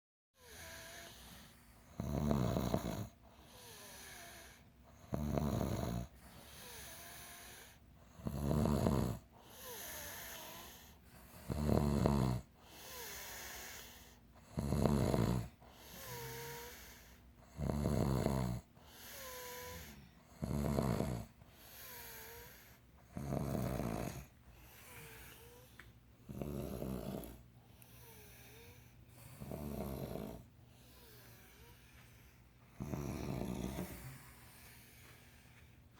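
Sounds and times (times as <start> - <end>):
people snoring: 0.4 - 25.7, 26.3 - 31.7, 32.8 - 34.5.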